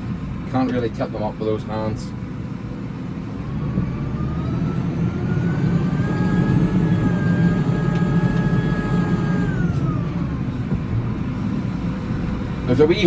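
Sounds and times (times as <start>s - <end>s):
tractor diesel engine running: 0.0s - 13.0s.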